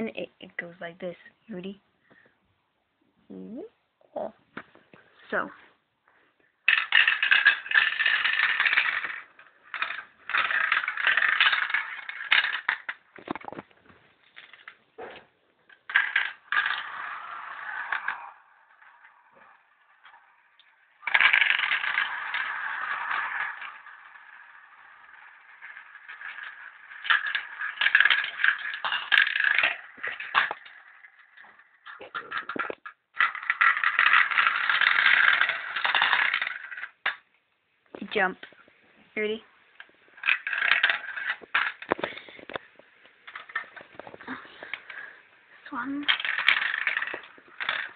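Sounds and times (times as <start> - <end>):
marbles rattling down a marble run: 6.7 - 13.7, 14.3 - 14.8, 15.7 - 37.2, 39.2 - 47.9.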